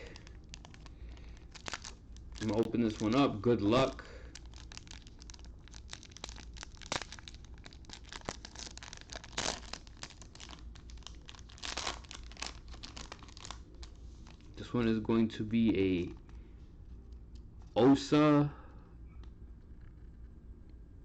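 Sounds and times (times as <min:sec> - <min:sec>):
wrapper tearing and crinkling: 0:00.0 - 0:03.4, 0:04.1 - 0:14.6.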